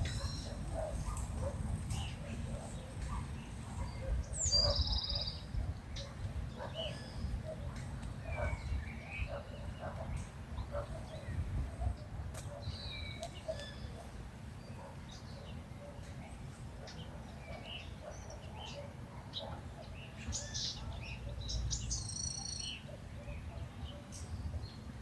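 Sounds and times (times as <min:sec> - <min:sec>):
birds calling: 0:00.0 - 0:25.0
bird trill: 0:03.8 - 0:05.5, 0:21.8 - 0:22.8.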